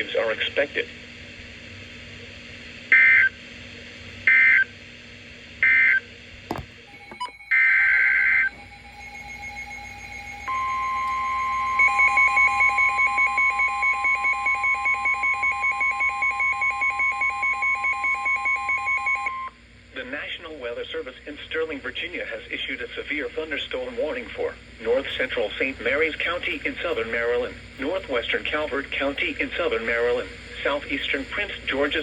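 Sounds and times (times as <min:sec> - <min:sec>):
steady alarm tone: 0:06.5 - 0:19.4
buzzy data tone bursts: 0:06.9 - 0:13.1.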